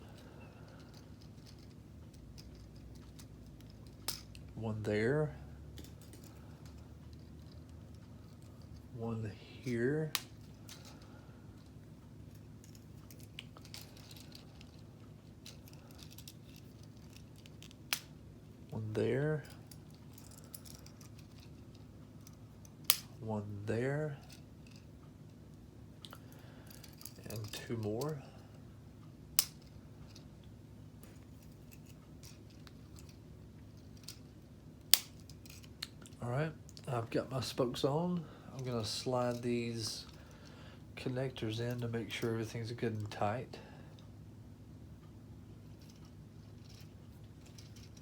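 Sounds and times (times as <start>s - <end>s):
steady low hum: 0.0s - 48.0s
plastic pieces clicking and rattling: 0.7s - 4.5s, 12.3s - 18.1s, 19.5s - 23.1s, 31.1s - 36.2s, 45.8s - 48.0s
sharp plastic snap: 34.9s - 35.2s.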